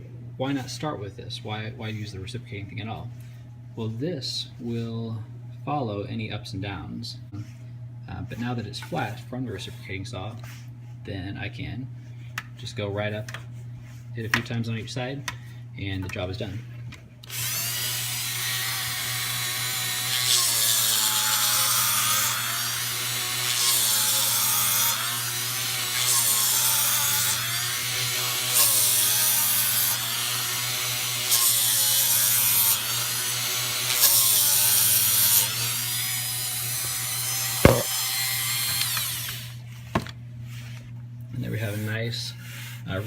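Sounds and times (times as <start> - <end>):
rotary tool motor spinning: 17.2 - 39.7
sharp knock: 37.6 - 37.9
sandpaper rubbing on wood: 41.5 - 43.0.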